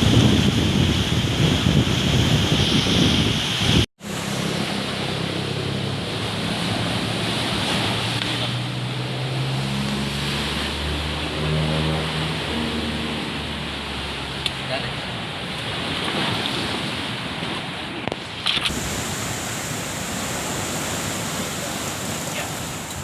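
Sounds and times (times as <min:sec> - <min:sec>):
wind buffeting microphone: 0:00.0 - 0:09.8
heavy surf crashing: 0:00.0 - 0:23.0.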